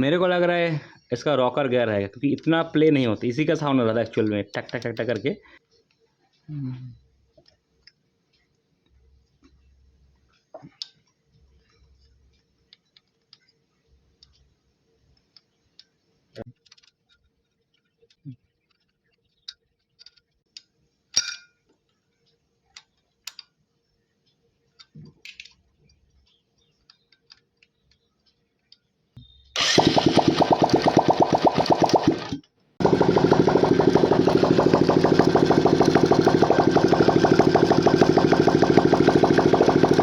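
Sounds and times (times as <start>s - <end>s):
motorcycle engine starting: 29.6s - 40.0s.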